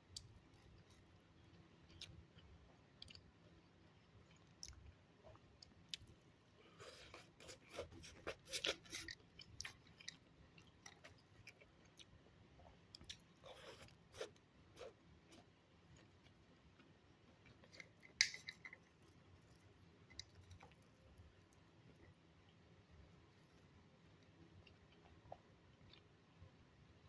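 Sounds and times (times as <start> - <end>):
person chewing: 6.7 - 12.1, 12.9 - 16.2.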